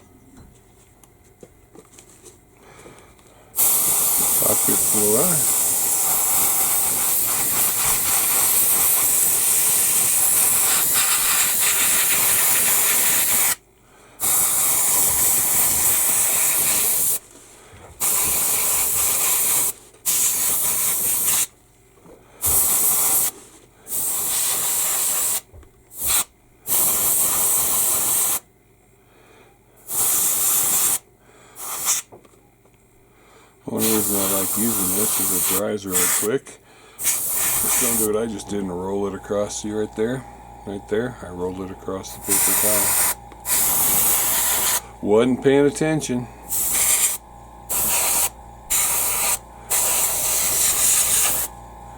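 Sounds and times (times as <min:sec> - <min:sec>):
airbrush spraying hiss: 0:03.6 - 0:13.6, 0:14.2 - 0:17.2, 0:18.0 - 0:21.5, 0:22.4 - 0:25.4, 0:31.6 - 0:32.1, 0:33.8 - 0:36.4, 0:37.0 - 0:39.8, 0:42.1 - 0:45.0, 0:46.5 - 0:51.6.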